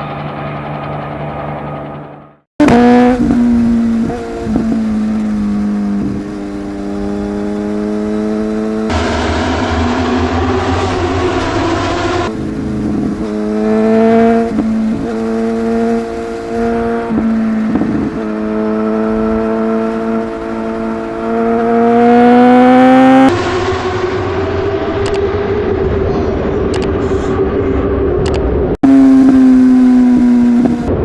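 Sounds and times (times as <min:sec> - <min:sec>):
motorcycle engine revving high: 0:00.0 - 0:28.1, 0:28.8 - 0:31.0
wind noise: 0:02.6 - 0:21.3.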